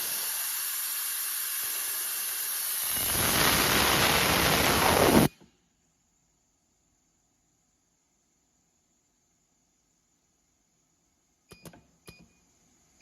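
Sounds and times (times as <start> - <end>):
pneumatic air hiss: 0.0 - 5.5.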